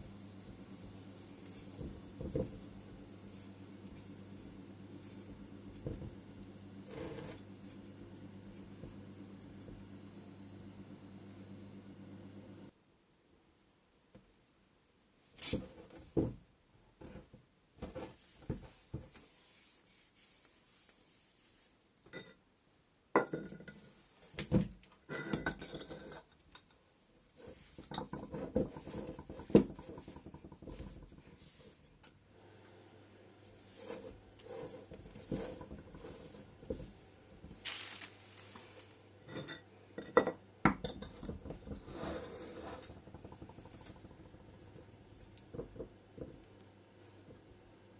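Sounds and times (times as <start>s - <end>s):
rustling and scraping: 0.7s - 10.3s, 17.0s - 21.8s, 27.3s - 32.0s, 33.4s - 39.0s
ceramic pots knocking and clinking: 23.2s - 23.8s.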